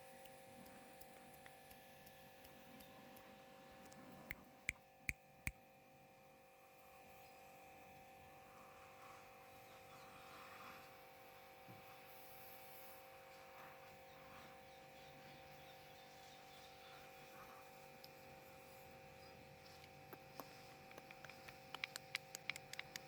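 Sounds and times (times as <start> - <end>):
faint steady hum: 0.0 - 23.0
sharp clicks: 20.4 - 23.0.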